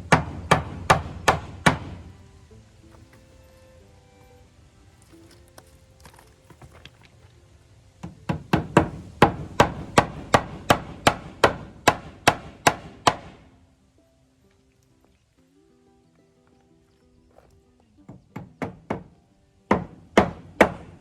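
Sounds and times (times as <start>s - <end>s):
hammer blows on a nail: 0.0s - 2.1s.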